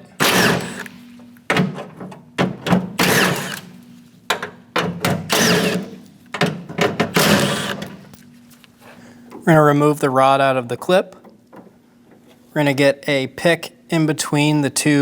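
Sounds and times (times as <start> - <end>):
ratchet undoing nuts: 0.2 - 1.0, 3.0 - 3.7, 5.3 - 6.0, 7.1 - 8.0.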